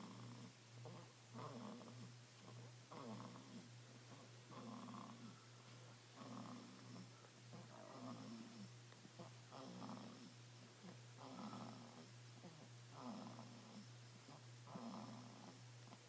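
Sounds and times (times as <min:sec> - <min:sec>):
soft rattly snoring: 0:00.0 - 0:16.0
steady low hum: 0:00.0 - 0:16.0.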